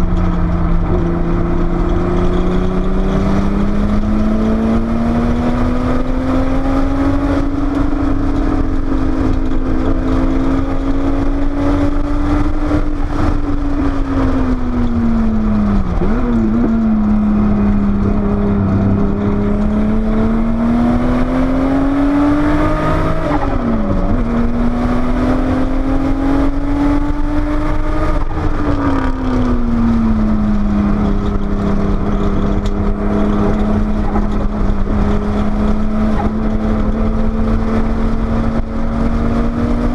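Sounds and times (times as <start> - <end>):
gear changes: 0.0 - 39.9
road and wind rumble: 0.0 - 39.9
turbocharged car engine revving: 0.0 - 39.9.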